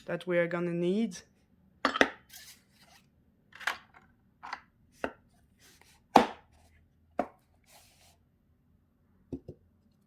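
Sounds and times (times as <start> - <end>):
tools knocking on tabletop: 9.3 - 9.6.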